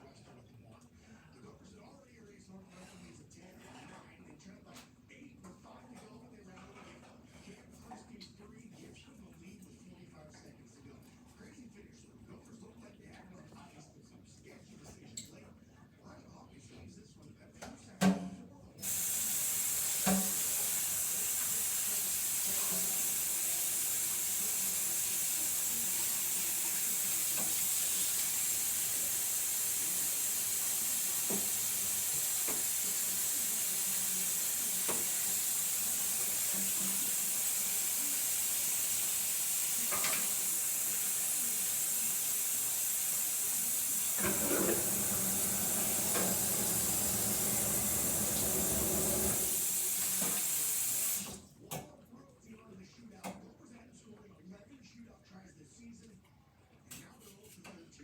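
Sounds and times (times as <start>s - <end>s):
food sizzling in a pan: 18.8s - 51.3s.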